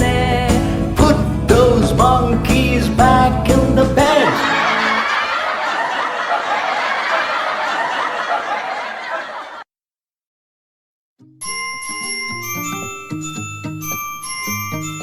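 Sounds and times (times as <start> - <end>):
children's song: 0.0 - 9.6
cartoon giggling and laughter: 4.2 - 9.6
glockenspiel melody: 11.4 - 15.0.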